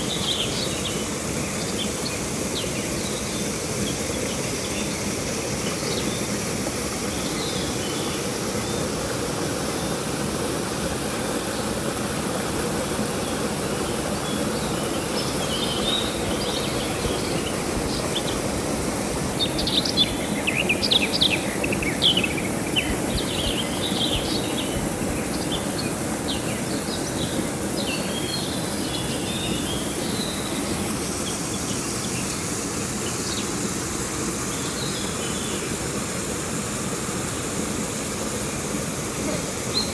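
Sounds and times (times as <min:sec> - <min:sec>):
river water rushing: 0:00.0 - 0:39.9
birds chirping: 0:19.4 - 0:33.6, 0:39.2 - 0:39.9.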